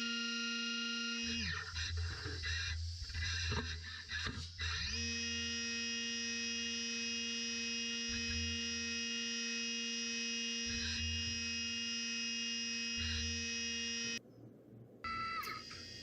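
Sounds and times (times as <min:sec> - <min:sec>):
milling machine whine: 0:00.0 - 0:14.2
low hum: 0:13.9 - 0:16.0.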